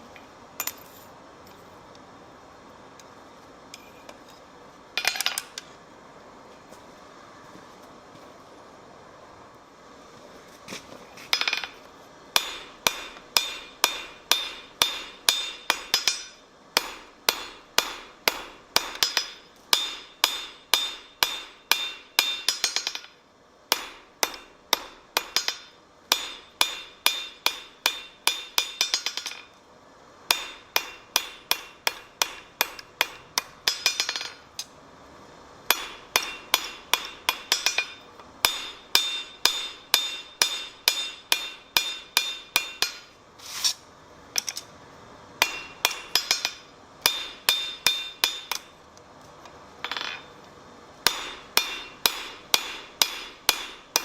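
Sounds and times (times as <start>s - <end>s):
hammer striking steel on anvil: 12.4s - 29.5s, 30.3s - 34.7s, 35.7s - 43.2s, 45.4s - 48.8s, 49.8s - 50.3s, 51.0s - 54.0s.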